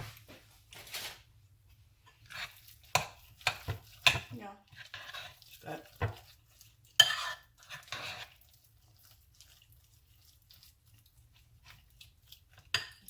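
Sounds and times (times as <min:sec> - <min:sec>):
utensil clinking on bowl: 0:02.4 - 0:08.3, 0:12.5 - 0:13.0.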